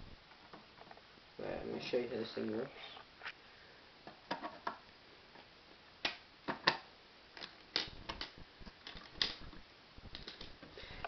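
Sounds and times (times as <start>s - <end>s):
plastic parts clicking: 7.4s - 10.6s.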